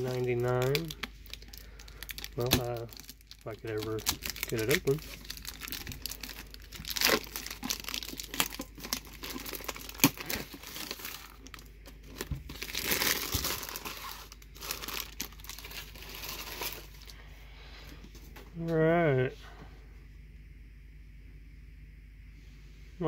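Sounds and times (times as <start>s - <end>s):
shrink wrap crinkling and tearing: 0.0s - 17.2s.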